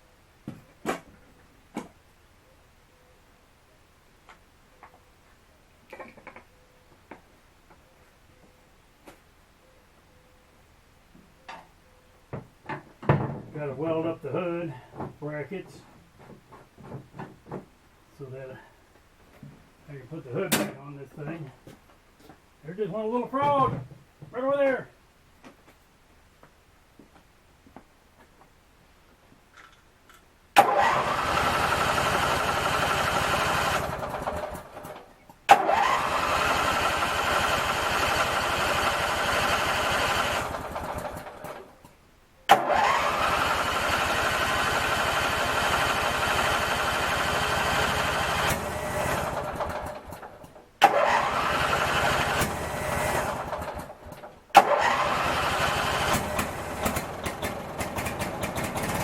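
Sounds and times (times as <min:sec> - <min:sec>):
riding mower engine starting: 0:30.6 - 0:41.7, 0:42.5 - 0:59.0.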